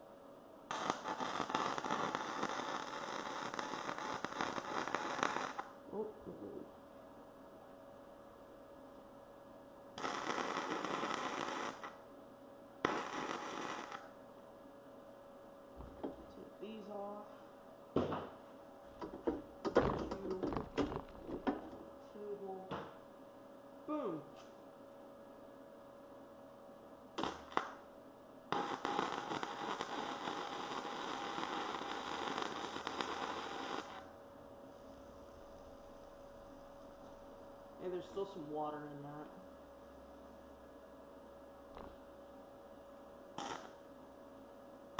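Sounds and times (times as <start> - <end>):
electric arc welder crackling: 0.7 - 5.8, 10.0 - 12.0, 12.8 - 14.2, 19.0 - 21.4, 27.2 - 27.9, 28.5 - 34.1, 43.4 - 43.9.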